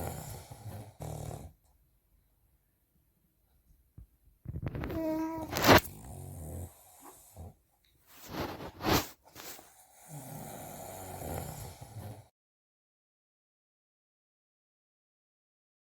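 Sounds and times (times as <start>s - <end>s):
man snoring: 0.0s - 1.6s, 5.0s - 7.6s, 9.8s - 12.3s.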